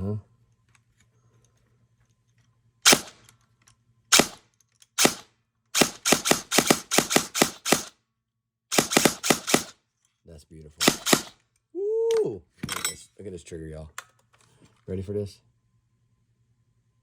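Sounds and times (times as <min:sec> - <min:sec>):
airsoft gun firing: 0:02.8 - 0:03.2, 0:04.1 - 0:08.0, 0:08.7 - 0:09.8, 0:10.8 - 0:11.4.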